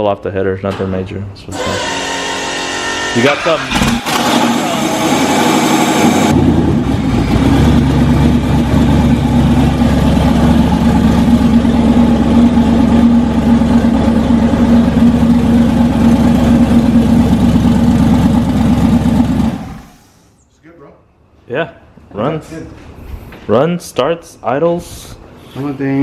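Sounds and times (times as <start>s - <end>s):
loud engine idling: 1.6s - 20.4s.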